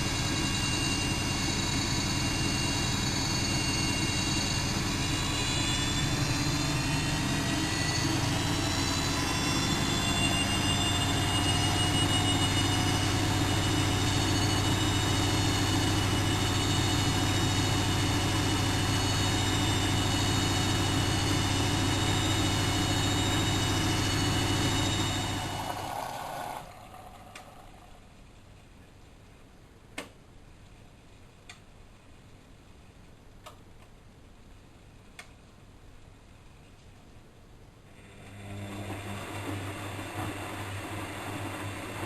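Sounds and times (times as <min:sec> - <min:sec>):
washing machine spinning: 0:00.0 - 0:28.2, 0:37.9 - 0:42.0.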